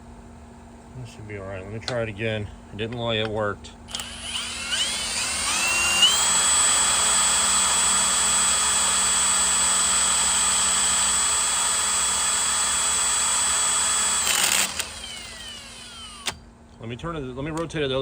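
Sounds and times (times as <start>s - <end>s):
electric drill whirring: 3.9s - 16.4s.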